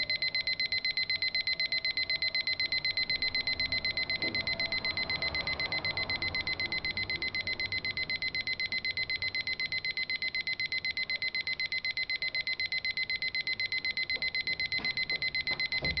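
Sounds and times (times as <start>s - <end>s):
alarm clock beeping: 0.0s - 16.0s.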